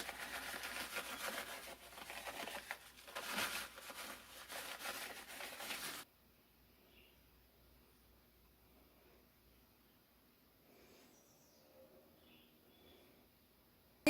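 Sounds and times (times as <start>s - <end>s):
cheese rustling and crinkling: 0.0s - 6.1s.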